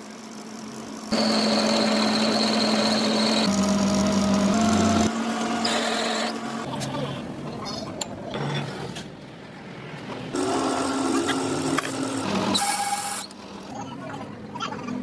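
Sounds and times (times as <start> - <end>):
machine running steadily: 0.0 - 7.2.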